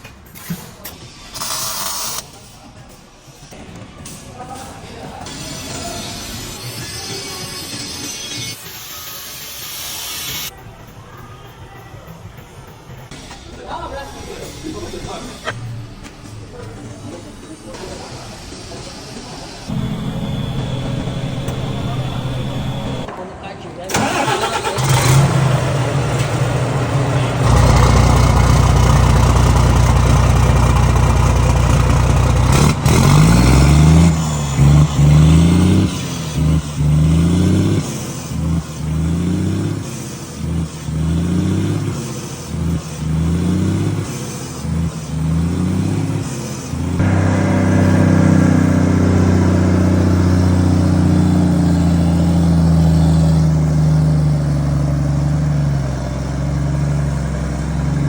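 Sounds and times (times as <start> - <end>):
diesel truck engine revving: 19.6 - 23.1, 23.9 - 58.0.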